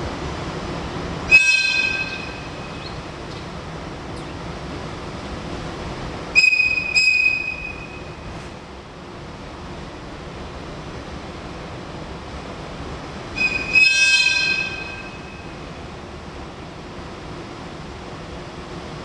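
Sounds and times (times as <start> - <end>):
train rail noise: 0.0 - 19.0
high-pitched train squeal: 1.3 - 3.0, 6.3 - 8.4, 13.3 - 15.6.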